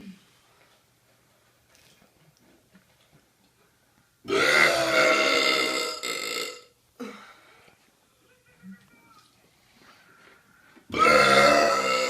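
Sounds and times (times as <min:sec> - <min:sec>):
man burping: 0:04.3 - 0:06.7, 0:10.9 - 0:12.0.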